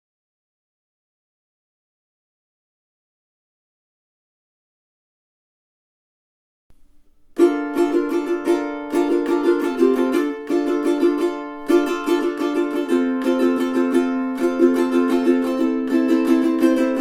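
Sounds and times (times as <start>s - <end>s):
ukulele chords strummed: 6.7s - 17.0s.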